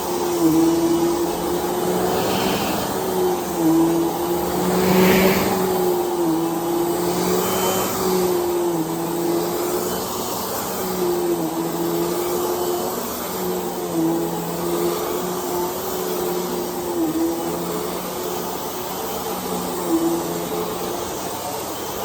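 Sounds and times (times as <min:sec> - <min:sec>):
vacuum cleaner running: 0:00.0 - 0:10.8.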